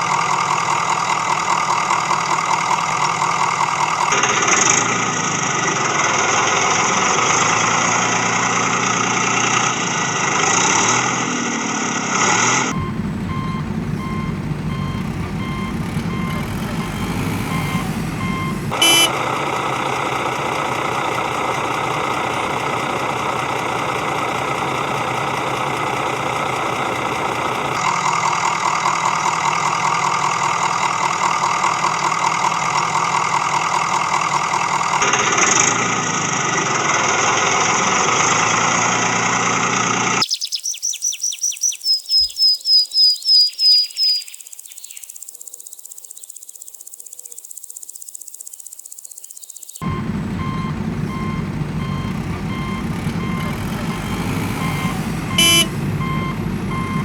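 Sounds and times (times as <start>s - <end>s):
heavy machine engine running: 12.3s - 40.2s, 49.8s - 57.0s
high chirps: 12.8s - 19.2s, 40.2s - 57.0s.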